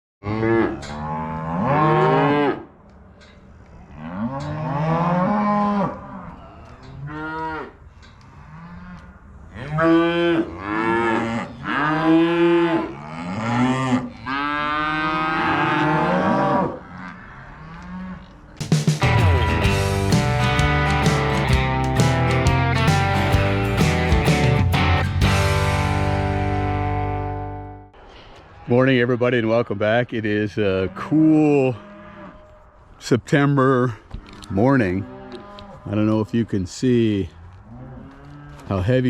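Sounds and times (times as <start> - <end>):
cows and calves bawling: 0.2 - 2.8, 3.7 - 27.8, 34.0 - 36.1, 37.5 - 39.0.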